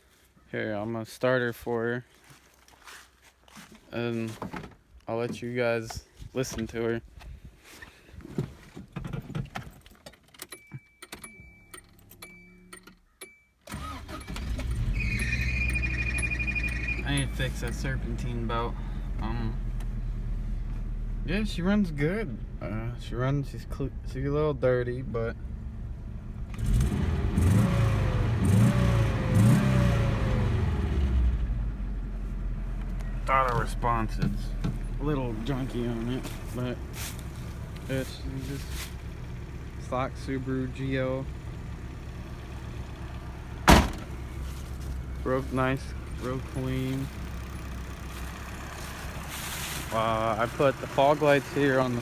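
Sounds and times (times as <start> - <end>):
car engine cranking and running: 8.8 - 52.0
high pulsing belt squeal: 14.4 - 17.7.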